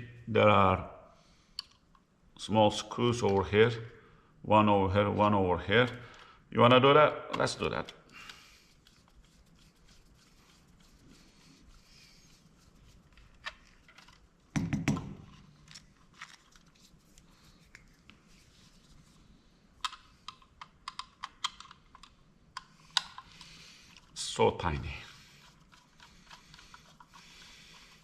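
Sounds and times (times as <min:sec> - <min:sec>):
screwdriver clicks and taps: 0:19.8 - 0:23.2.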